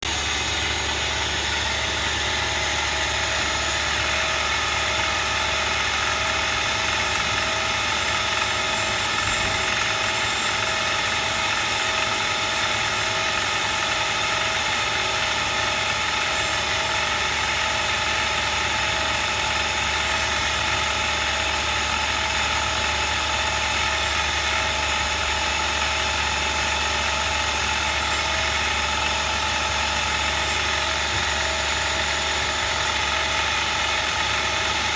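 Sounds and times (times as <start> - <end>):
machine tool humming: 5.6 - 12.2, 13.1 - 32.0.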